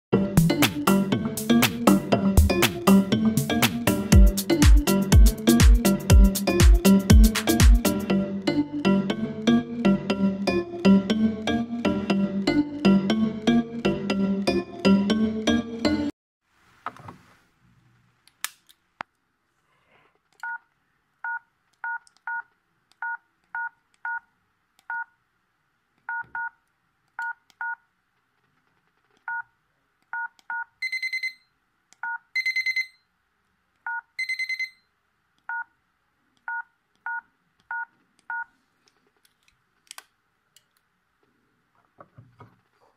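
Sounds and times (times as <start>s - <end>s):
phone keypad two-tone beeps: 32.4s - 33.0s, 34.2s - 34.8s.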